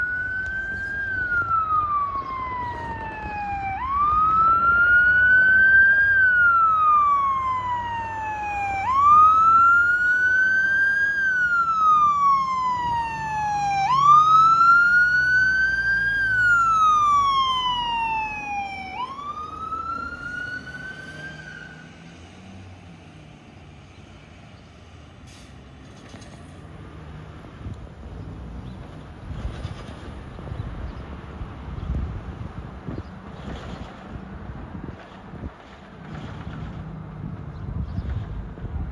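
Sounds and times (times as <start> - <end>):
fire truck siren wailing: 0.0 - 22.2.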